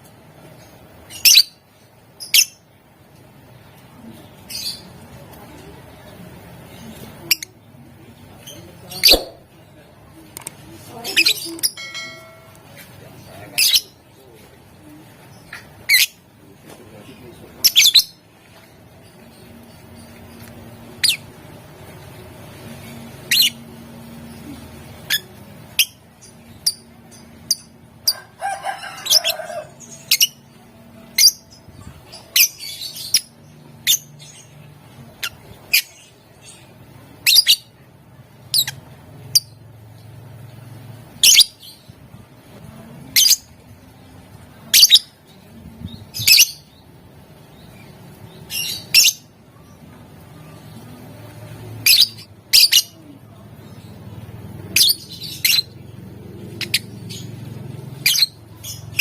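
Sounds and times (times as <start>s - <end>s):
bird chattering: 54.6s - 57.3s.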